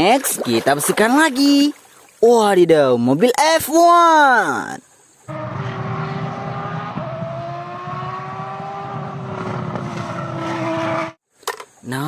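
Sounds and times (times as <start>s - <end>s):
racing car engine drone: 5.3s - 11.2s.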